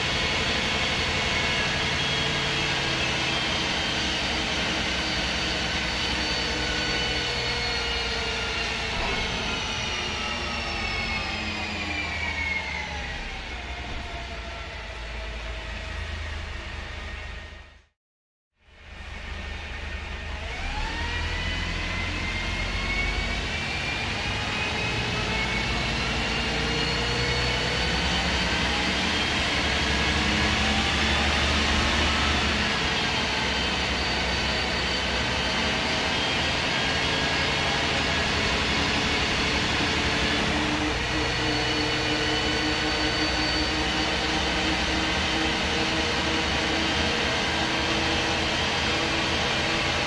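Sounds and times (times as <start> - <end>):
bus engine drone: 0.0 - 17.9, 18.6 - 50.0
gearbox whine: 19.2 - 50.0.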